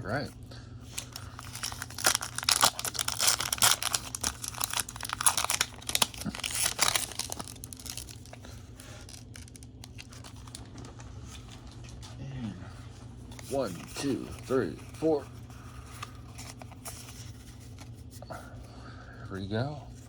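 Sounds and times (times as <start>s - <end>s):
low steady hum: 0.0s - 20.0s
foil wrapper tearing and crinkling: 0.9s - 10.7s.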